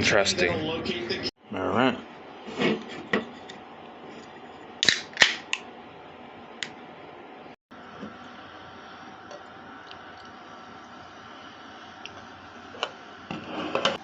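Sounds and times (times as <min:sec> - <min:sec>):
beer can cracked open: 0:04.8 - 0:05.6.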